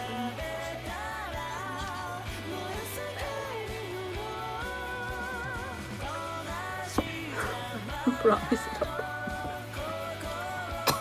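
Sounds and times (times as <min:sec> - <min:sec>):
pop music with singing: 0:00.0 - 0:11.0.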